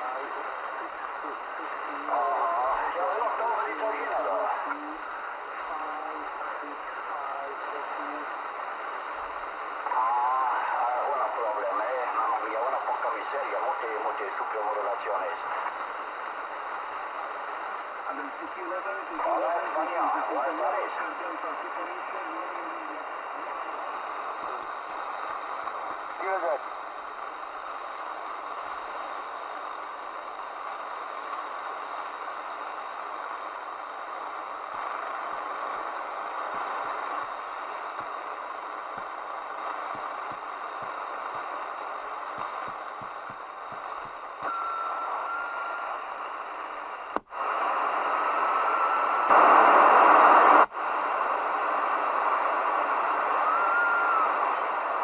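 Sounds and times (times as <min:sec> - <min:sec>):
radio static hiss: 0:00.0 - 0:55.0
faint whistling tones: 0:44.5 - 0:46.0.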